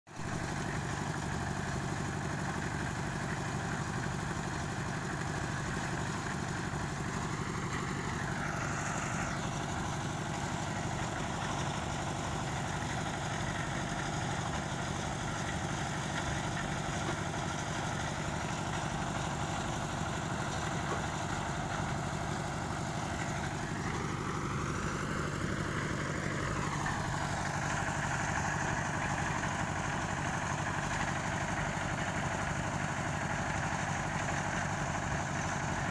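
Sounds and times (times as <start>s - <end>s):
construction machinery engine running: 0.2s - 35.9s.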